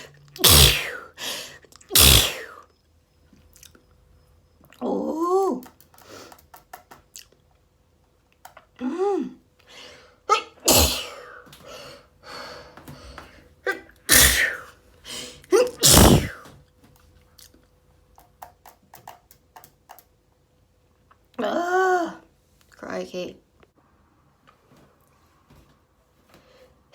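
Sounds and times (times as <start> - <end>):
person sneezing: 0.0 - 2.6, 10.3 - 11.4, 13.7 - 16.5
drawn-out ah before sneeze: 0.3 - 1.1, 1.9 - 2.6, 10.3 - 11.4, 13.7 - 14.7, 15.5 - 16.4.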